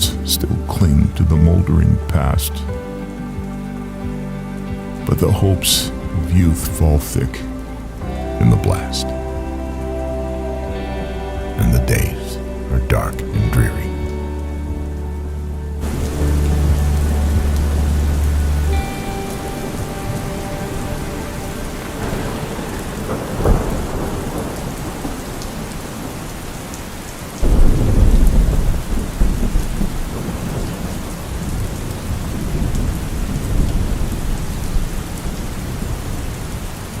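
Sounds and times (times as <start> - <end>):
steady rain: 0.0 - 37.0
thunder clap and rumble: 19.6 - 37.0.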